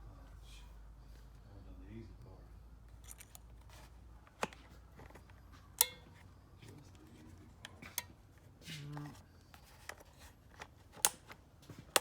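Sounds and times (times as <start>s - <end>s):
hard plastic parts clicking: 9.6s - 12.0s.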